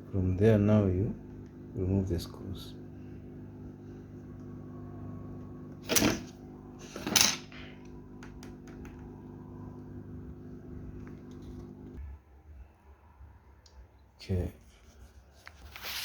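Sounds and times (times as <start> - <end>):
electrical hum: 0.0 - 12.1.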